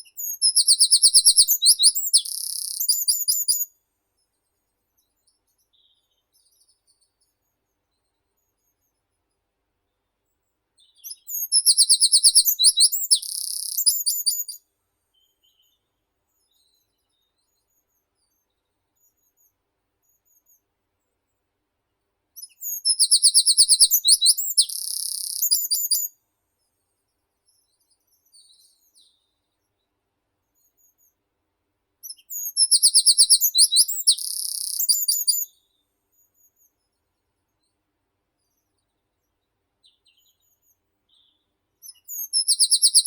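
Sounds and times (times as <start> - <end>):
songbird singing: 0.0 - 3.8, 10.8 - 18.4, 22.4 - 26.2, 32.0 - 37.0, 38.4 - 43.0.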